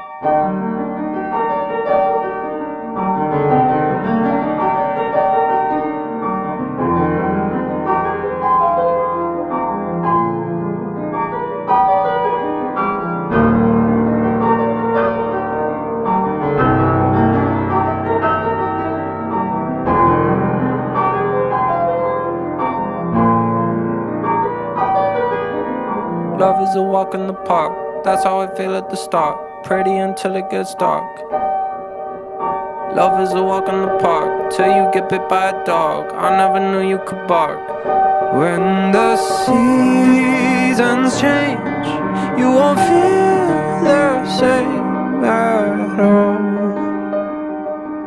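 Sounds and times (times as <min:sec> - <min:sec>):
piano music: 0:00.0 - 0:48.0.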